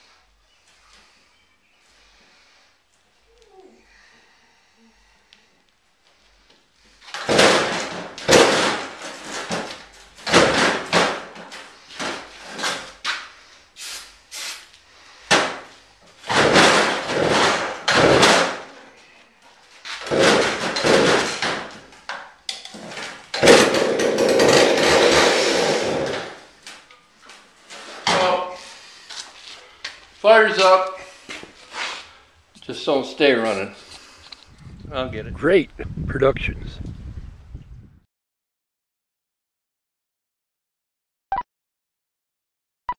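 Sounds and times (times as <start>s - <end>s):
chainsaw engine firing and dying: 7.2s - 9.3s, 16.3s - 18.7s, 20.1s - 21.7s, 23.3s - 26.5s
chainsaw recoil starter pulls: 22.7s - 26.4s.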